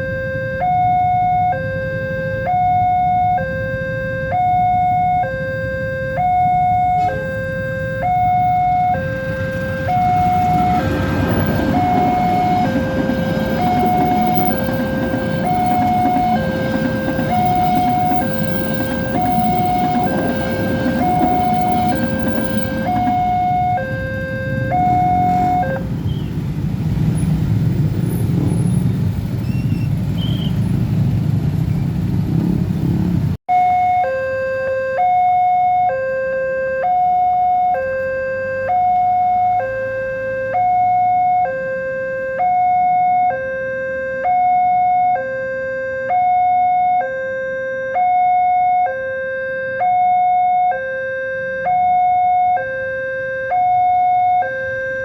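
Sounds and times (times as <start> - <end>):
level crossing two-tone alarm: 0.0 - 25.9, 33.5 - 55.0
train rumbling over crossing: 4.3 - 33.4.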